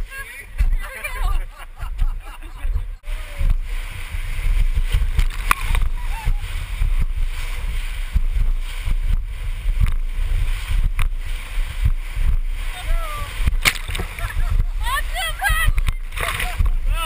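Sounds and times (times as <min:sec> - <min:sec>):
thumps on microphone: 0:01.8 - 0:12.5, 0:13.4 - 0:14.8
whitewater rushing: 0:03.0 - 0:17.0
person shouting: 0:12.8 - 0:13.4.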